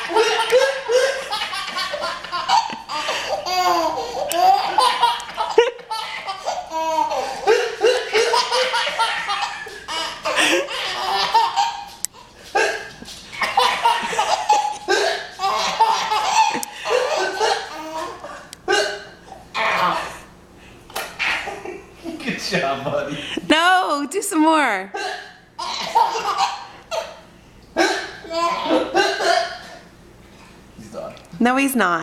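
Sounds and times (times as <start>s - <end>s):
baby laughing: 0.0s - 18.5s, 19.4s - 20.2s, 21.0s - 21.8s, 25.0s - 27.2s, 27.8s - 29.3s.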